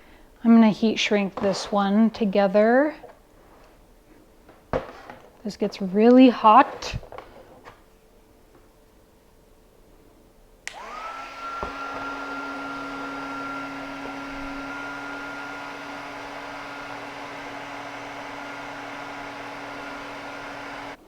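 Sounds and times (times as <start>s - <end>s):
heat gun fan whine: 10.6s - 21.0s.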